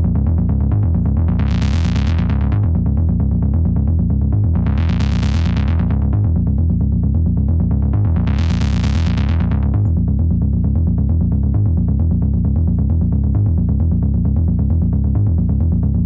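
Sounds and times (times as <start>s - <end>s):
pulsing synthesizer bass: 0.0s - 16.0s.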